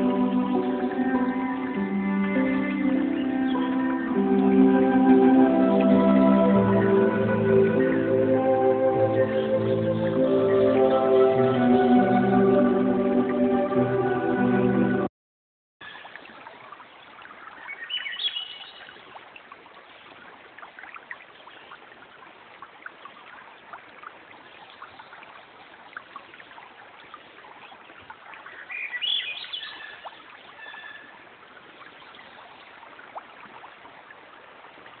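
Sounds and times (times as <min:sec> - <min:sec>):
running water: 0:00.0 - 0:15.1, 0:15.8 - 0:35.0.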